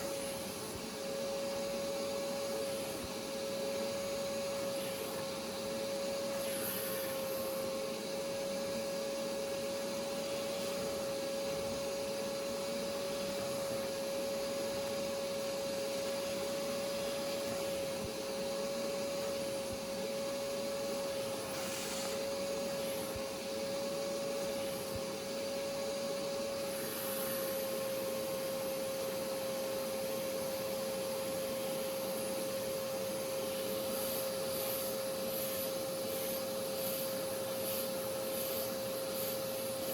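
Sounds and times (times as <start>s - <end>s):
vacuum motor whining: 0.0s - 39.9s
attachment hissing: 21.4s - 22.3s.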